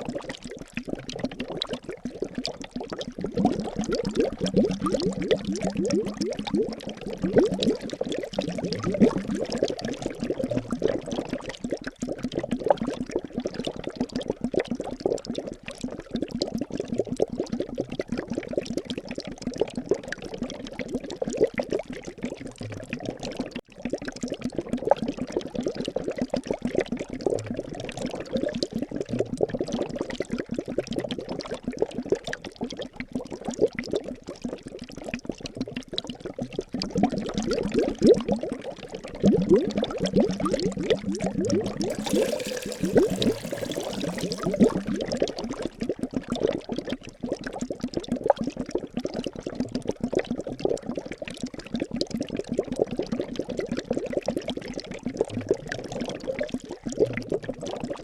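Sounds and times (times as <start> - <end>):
water bubbling and gurgling: 0.0 - 25.5, 35.0 - 45.3.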